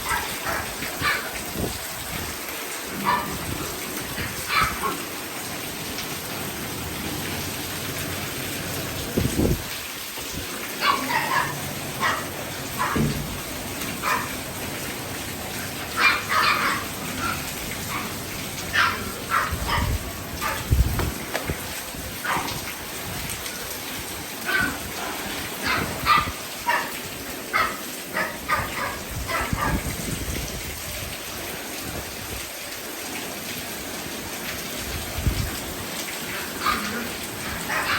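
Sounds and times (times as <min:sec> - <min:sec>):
steady rain: 0:00.0 - 0:37.9
dog yelping: 0:04.3 - 0:05.1, 0:10.8 - 0:13.0, 0:14.0 - 0:14.4, 0:15.9 - 0:20.7, 0:25.6 - 0:27.0, 0:27.6 - 0:29.8, 0:36.4 - 0:37.9
dull low thump: 0:20.8 - 0:21.6.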